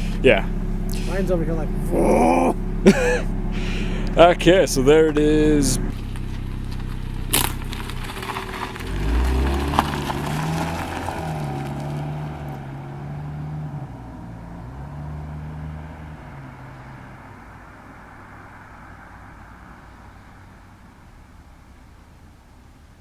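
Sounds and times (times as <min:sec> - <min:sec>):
car engine and exhaust running: 0:00.0 - 0:23.0.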